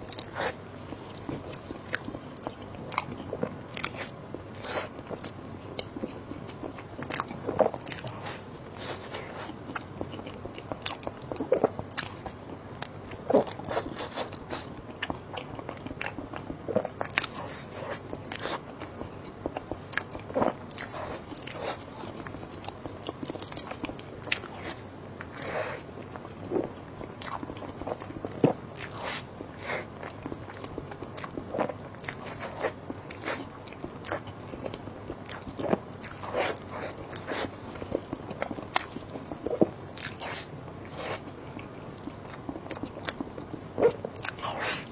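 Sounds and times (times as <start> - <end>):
person chewing crunchy food: 0.0 - 44.9.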